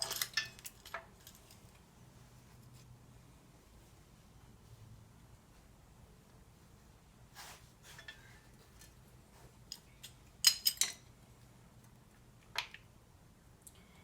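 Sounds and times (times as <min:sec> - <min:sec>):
metal tools clinking: 0:00.0 - 0:01.8, 0:09.7 - 0:11.1.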